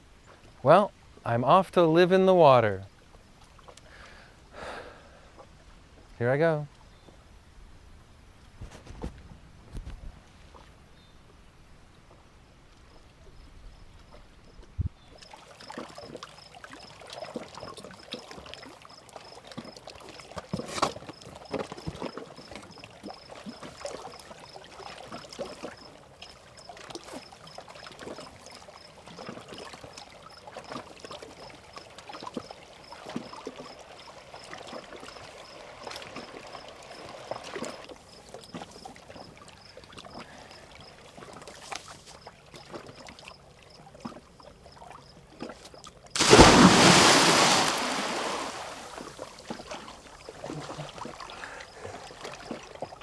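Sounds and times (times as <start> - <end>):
water splashing and sloshing: 2.9 - 3.9, 15.2 - 53.0.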